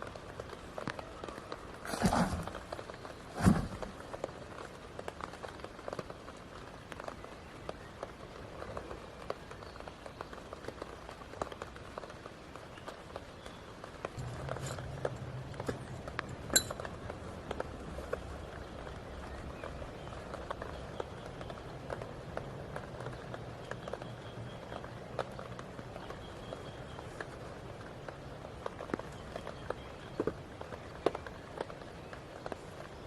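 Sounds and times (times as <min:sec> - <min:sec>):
footsteps: 0:01.8 - 0:04.1
low steady hum: 0:14.2 - 0:20.1.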